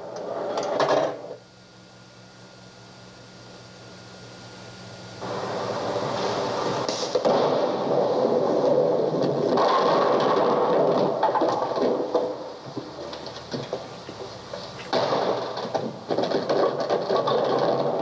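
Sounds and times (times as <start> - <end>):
faint tape hum and hiss: 0.0 - 18.0.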